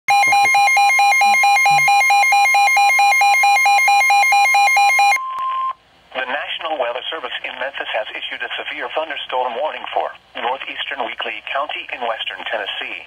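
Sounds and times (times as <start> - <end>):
steady warning tone: 0.1 - 5.7
two-pitch electronic alarm beeping: 0.1 - 5.7.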